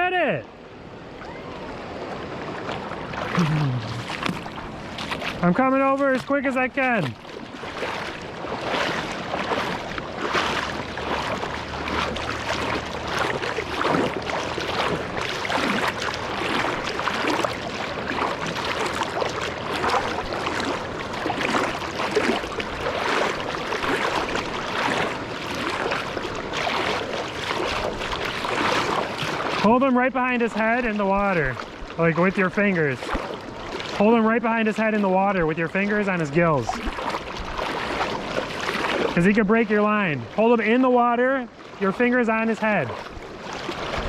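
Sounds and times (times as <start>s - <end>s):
hurried footsteps: 3.1s - 29.7s, 34.8s - 39.4s.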